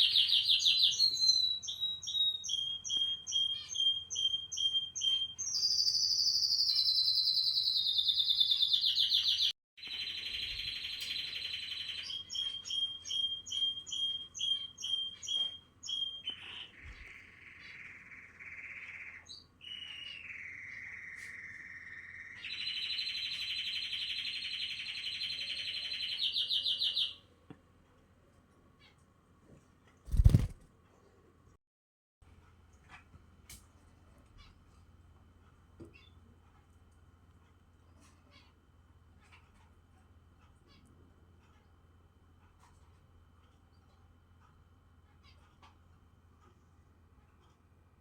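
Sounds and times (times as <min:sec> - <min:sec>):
canary singing chirps and trills: 0:00.0 - 0:27.5, 0:30.1 - 0:30.6, 0:34.2 - 0:48.0.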